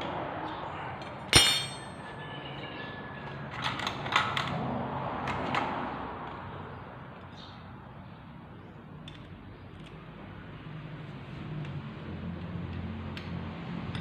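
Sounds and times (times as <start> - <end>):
metal tools clinking: 1.0 - 2.2.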